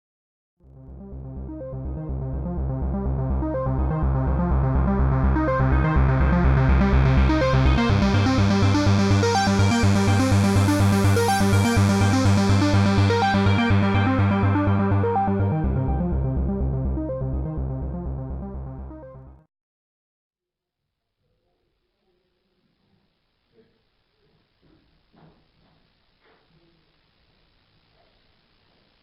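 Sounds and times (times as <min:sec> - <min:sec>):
electronic synthesizer music: 0:00.7 - 0:19.4.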